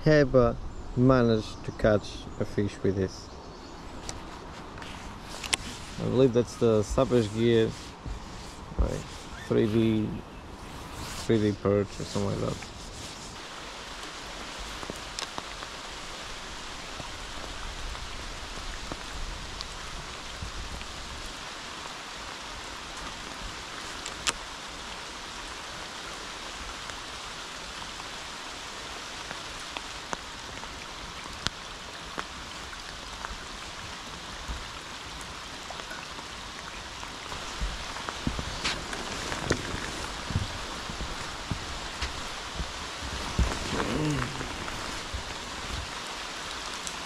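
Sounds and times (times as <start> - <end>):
steady rain hissing: 0.0 - 47.0
raindrops ticking close by: 3.9 - 10.2, 11.0 - 47.0.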